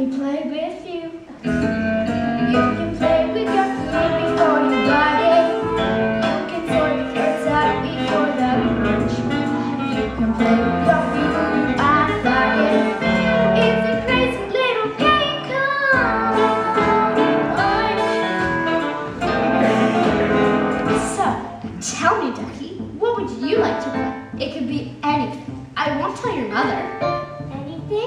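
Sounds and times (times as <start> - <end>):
show tune band accompaniment: 1.4 - 27.7
singing voices: 2.4 - 21.4.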